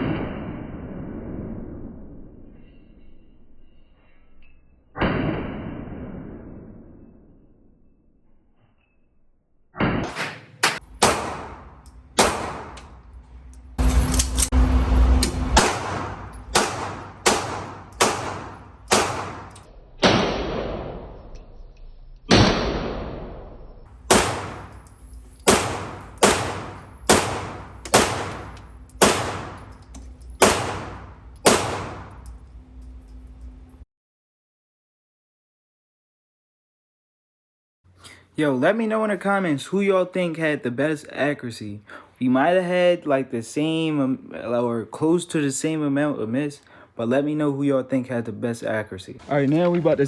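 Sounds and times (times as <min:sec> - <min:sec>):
handgun shots: 0:09.8 - 0:13.0, 0:15.6 - 0:20.5, 0:24.1 - 0:32.3.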